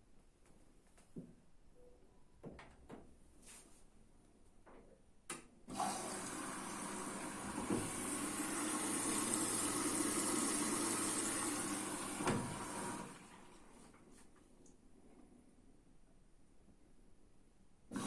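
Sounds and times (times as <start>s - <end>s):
water rushing into washing machine: 5.7s - 13.9s.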